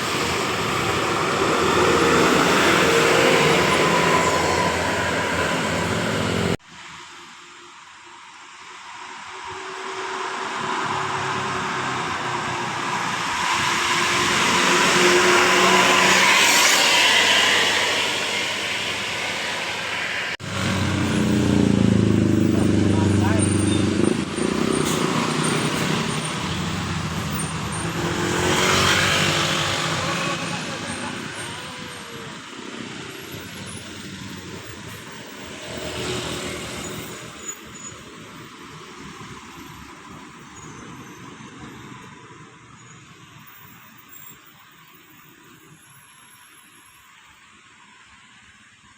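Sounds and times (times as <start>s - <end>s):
vehicle passing loudly: 0.0s - 6.6s, 10.3s - 33.0s
bus driving past: 0.0s - 7.7s, 8.4s - 48.3s
road traffic passing: 0.0s - 46.0s.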